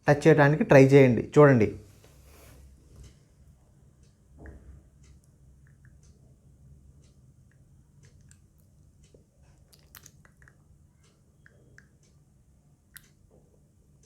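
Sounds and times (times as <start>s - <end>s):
wet mouth clicks and smacks: 7.5s - 10.6s, 12.9s - 13.2s.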